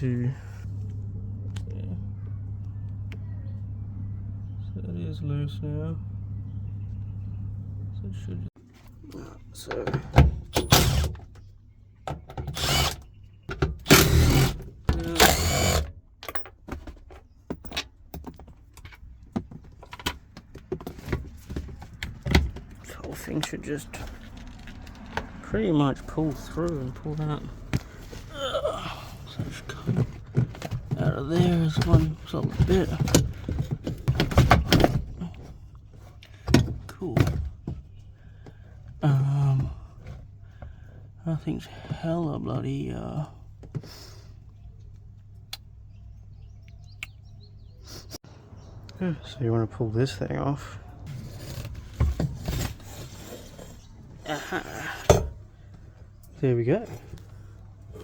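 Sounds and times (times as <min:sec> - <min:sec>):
metal scraping and rattling: 0:29.0 - 0:35.2, 0:51.1 - 0:55.5.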